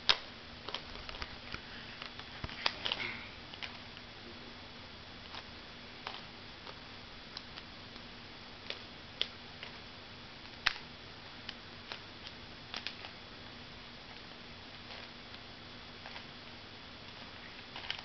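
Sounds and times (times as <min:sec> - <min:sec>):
puzzle cube layers clicking: 0:10.4 - 0:13.2.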